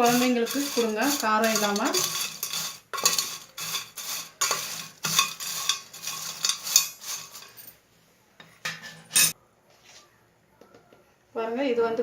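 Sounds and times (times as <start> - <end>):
spoon scraping against a bowl: 0.0 - 7.8.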